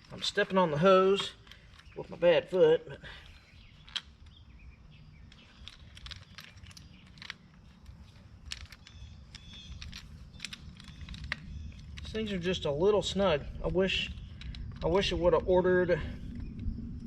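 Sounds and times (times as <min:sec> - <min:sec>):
metal clamp clicks and rustles: 0:00.0 - 0:16.7
birds chirping: 0:00.0 - 0:17.0.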